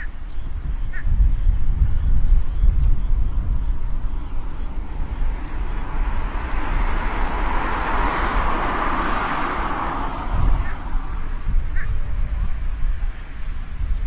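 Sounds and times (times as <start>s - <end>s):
wind rumble on microphone: 0.0s - 14.0s
vehicle passing: 3.2s - 13.8s.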